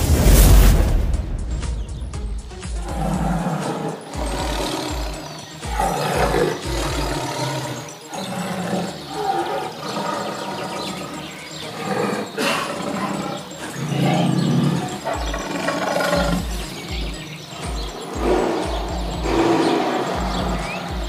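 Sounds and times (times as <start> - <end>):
music with heavy bass beat: 0.0 - 7.2, 16.2 - 21.0.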